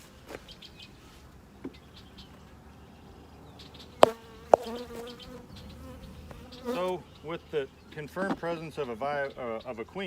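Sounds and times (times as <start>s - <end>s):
bees buzzing: 3.9s - 7.2s
sharp knocks on hive: 4.0s - 5.1s.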